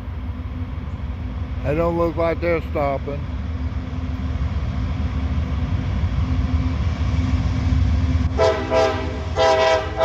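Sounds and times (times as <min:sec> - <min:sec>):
diesel locomotive rumbling past: 0:00.0 - 0:10.0
train air horn blasts: 0:08.3 - 0:10.0.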